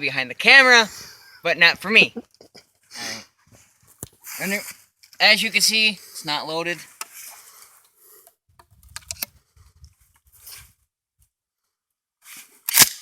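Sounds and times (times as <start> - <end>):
sharp metallic clicks: 12.7 - 13.0.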